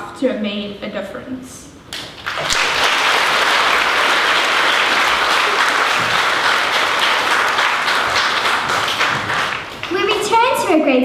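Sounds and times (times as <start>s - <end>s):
children applauding: 2.0s - 10.5s.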